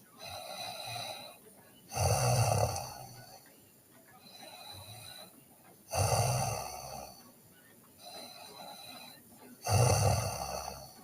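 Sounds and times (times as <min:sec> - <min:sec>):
girl snoring: 0:00.2 - 0:03.4, 0:04.2 - 0:05.3, 0:05.9 - 0:07.2, 0:08.0 - 0:11.0.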